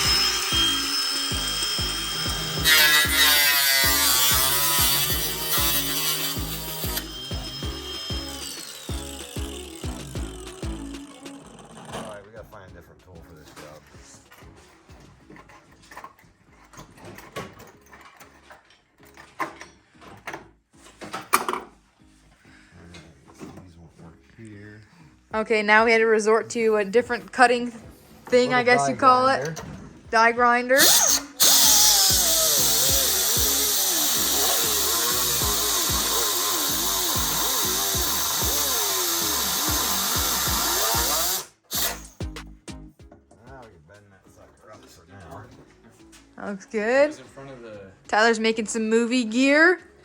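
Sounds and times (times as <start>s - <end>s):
die grinder cutting metal: 0.0s - 12.2s, 30.8s - 42.2s
metal tools clunking and rattling: 13.6s - 21.8s, 29.2s - 30.1s.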